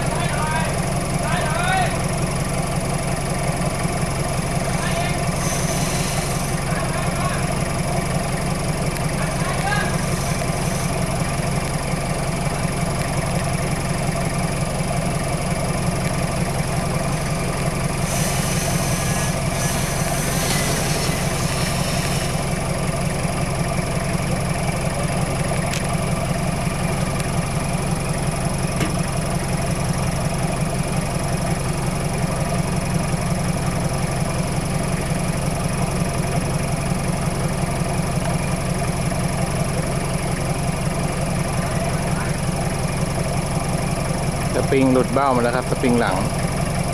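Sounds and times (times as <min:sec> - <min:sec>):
vehicle engine idling: 0:00.0 - 0:46.9
rushing hiss: 0:04.8 - 0:07.0, 0:09.1 - 0:11.6, 0:17.0 - 0:22.8.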